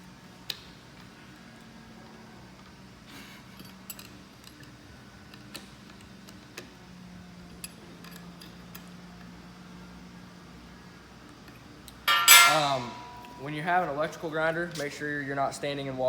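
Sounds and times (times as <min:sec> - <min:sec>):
faint metallic clicks and clinks: 0:03.6 - 0:06.7, 0:12.1 - 0:13.5.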